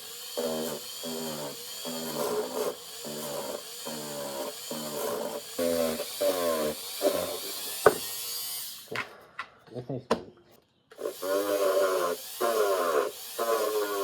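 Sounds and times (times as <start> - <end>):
rotary tool polishing metal: 0.0 - 8.9, 11.0 - 14.0.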